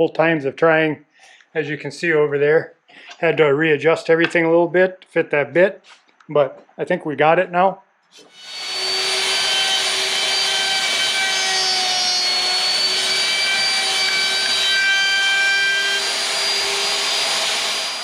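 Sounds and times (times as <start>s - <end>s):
wood router whining: 8.2s - 18.0s.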